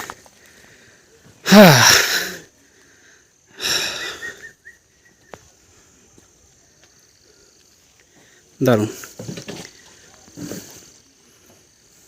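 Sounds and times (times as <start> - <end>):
person breathing out heavily: 0.0 - 4.3.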